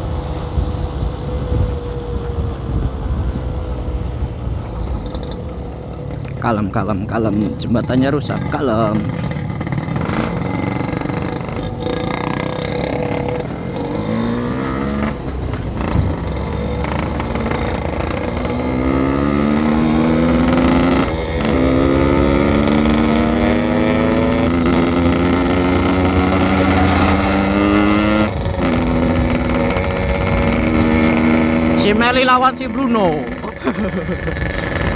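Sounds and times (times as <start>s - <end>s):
motorcycle engine accelerating: 0.0s - 34.9s.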